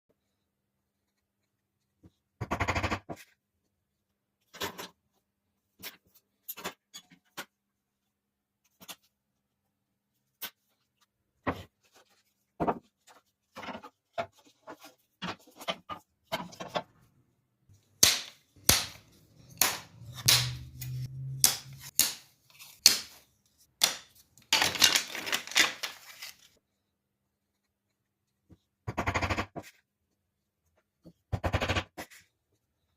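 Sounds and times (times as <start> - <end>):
wood pieces knocking: 18.0 - 22.2, 23.8 - 26.0.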